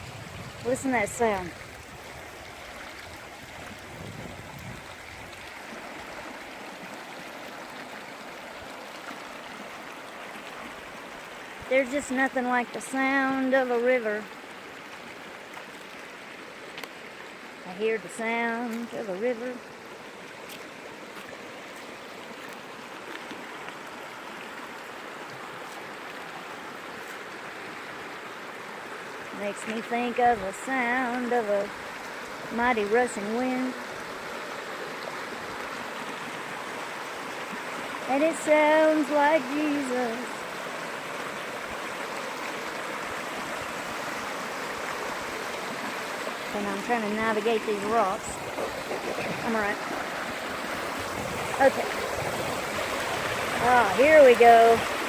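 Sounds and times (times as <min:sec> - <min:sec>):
brook running over rocks: 0:00.0 - 0:55.0
brook rushing over rocks: 0:29.6 - 0:55.0.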